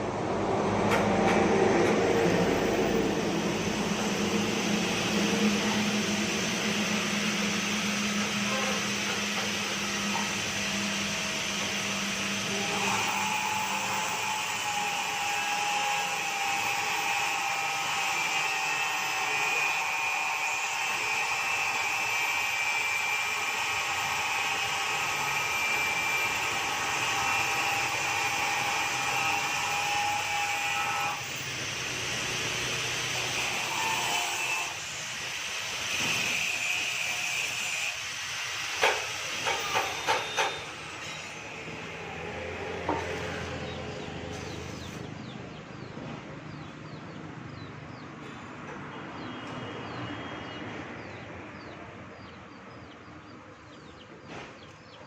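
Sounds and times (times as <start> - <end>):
sharp metal knocks: 38.8 - 41.4.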